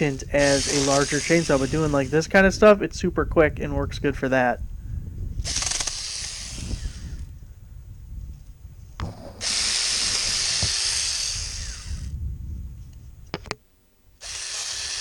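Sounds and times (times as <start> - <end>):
electric chainsaw whirring: 0.0 - 2.2, 5.4 - 7.4, 9.0 - 12.2, 14.2 - 15.0
sharp clicks: 5.5 - 7.3.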